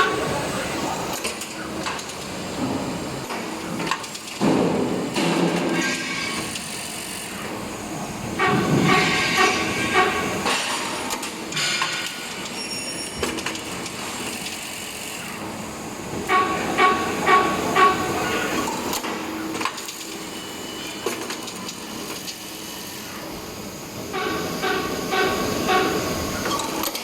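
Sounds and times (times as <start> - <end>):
machine running: 4.8 - 12.7, 13.9 - 27.0.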